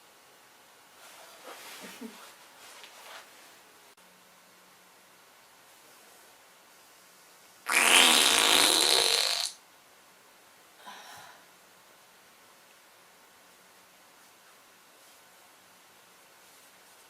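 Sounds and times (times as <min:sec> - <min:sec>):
fart: 0:07.7 - 0:09.6.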